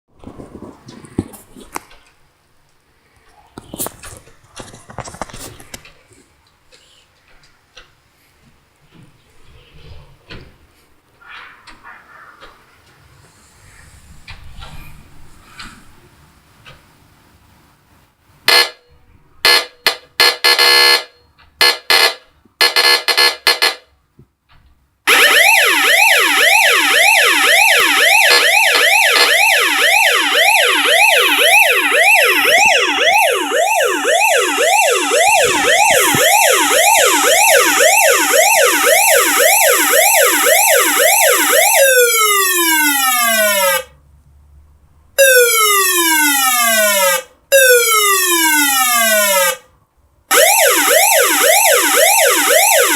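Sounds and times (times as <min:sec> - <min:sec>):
electronic siren: 0:18.5 - 0:18.8, 0:19.4 - 0:21.0, 0:21.6 - 0:23.8, 0:25.1 - 0:43.9, 0:45.2 - 0:49.6, 0:50.3 - 0:52.9.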